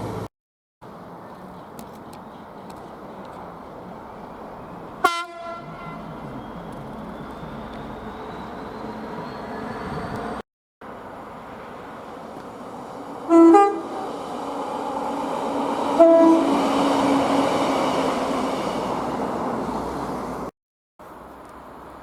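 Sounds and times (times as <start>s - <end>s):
train running noise: 0.0s - 20.5s
train horn blasts: 5.0s - 6.1s, 13.3s - 14.1s, 15.9s - 16.7s.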